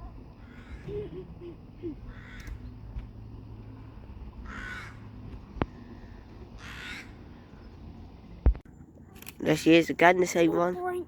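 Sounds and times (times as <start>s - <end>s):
low background hum: 0.0s - 11.0s
harsh cawing bird calls: 0.4s - 1.0s, 2.1s - 2.8s, 4.4s - 7.7s.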